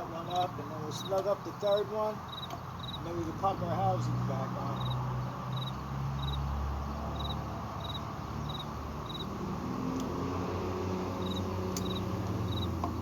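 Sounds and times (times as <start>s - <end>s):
cricket chirping: 0.3s - 3.1s, 4.7s - 6.5s, 7.1s - 9.4s, 11.2s - 13.0s
sharp clicks: 11.7s - 12.1s.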